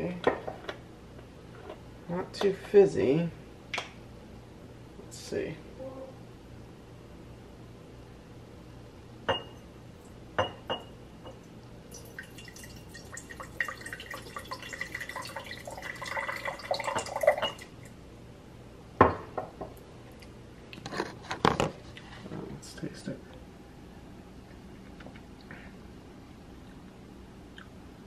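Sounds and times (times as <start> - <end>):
glass clinks and knocks: 9.3 - 9.6
liquid pouring into glass: 11.9 - 17.8.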